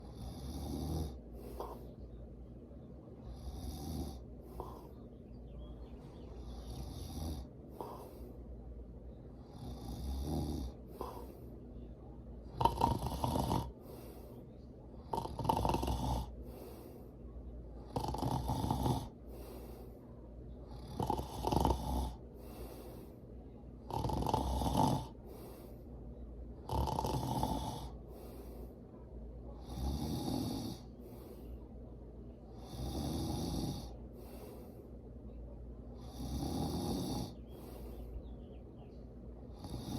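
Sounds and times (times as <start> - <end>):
person snoring: 0.0 - 1.8, 3.3 - 4.9, 6.4 - 8.1, 9.5 - 11.2, 12.6 - 13.8, 15.1 - 16.4, 17.9 - 19.2, 20.7 - 22.2, 23.9 - 25.2, 26.6 - 28.0, 32.6 - 34.0, 36.0 - 37.4.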